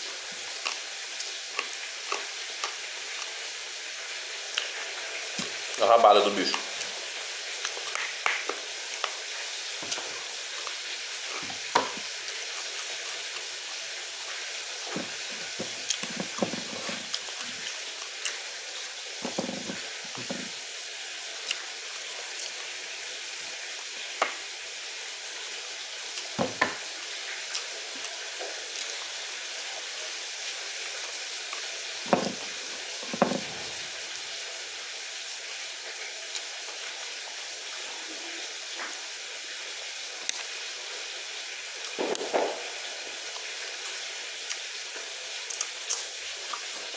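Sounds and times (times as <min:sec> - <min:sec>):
steady hiss: 0:03.8 - 0:20.9
crunchy chewing: 0:14.3 - 0:20.6.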